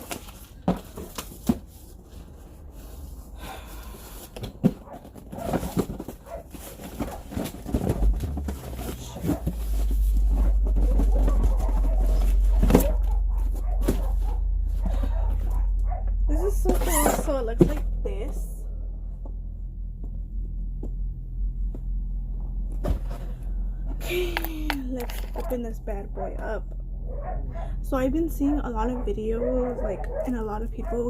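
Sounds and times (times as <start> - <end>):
packaging rustling and knocking: 0.0 - 1.9, 4.3 - 15.6
steady low rumble: 7.2 - 31.0.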